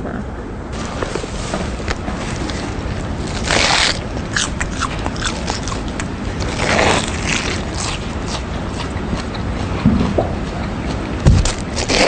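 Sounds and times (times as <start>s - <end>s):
crunching on potato crisps: 2.3s - 9.8s, 10.9s - 12.0s.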